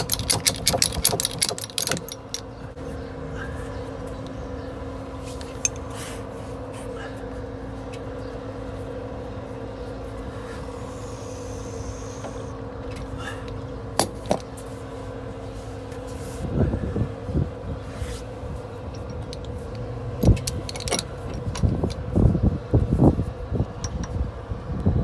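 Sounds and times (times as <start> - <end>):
sharp metallic clicks: 0.0 - 2.5
steady machine hum: 0.0 - 25.0.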